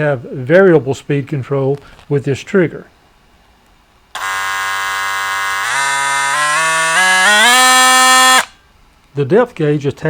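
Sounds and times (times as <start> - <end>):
oscillating multi-tool buzzing: 4.1 - 8.6.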